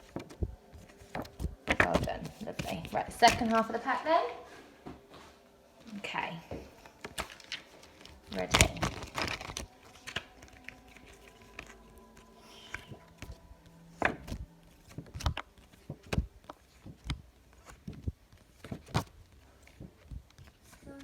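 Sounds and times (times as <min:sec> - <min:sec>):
cards tapping and flicking: 0:00.0 - 0:03.6, 0:06.8 - 0:20.9.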